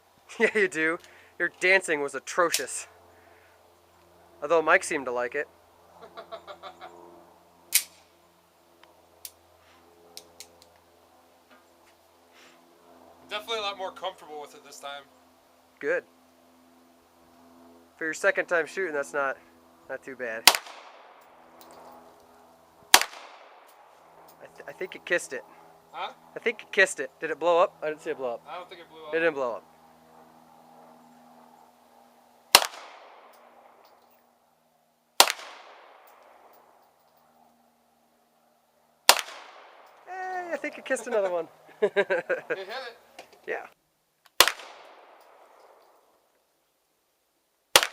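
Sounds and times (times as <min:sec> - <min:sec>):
gunshot with echo: 0:20.5 - 0:21.0, 0:22.9 - 0:23.5, 0:32.5 - 0:33.1, 0:35.2 - 0:35.9, 0:44.4 - 0:45.0.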